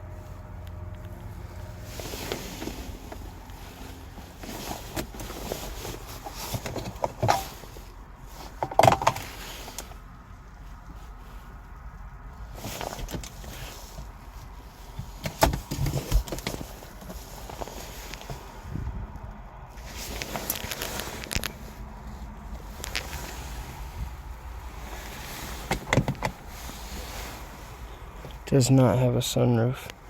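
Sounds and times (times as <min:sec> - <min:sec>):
clicks and knocks in car interior: 0:04.4 - 0:07.6, 0:08.4 - 0:09.9, 0:12.6 - 0:14.1, 0:14.9 - 0:18.5, 0:24.9 - 0:26.8.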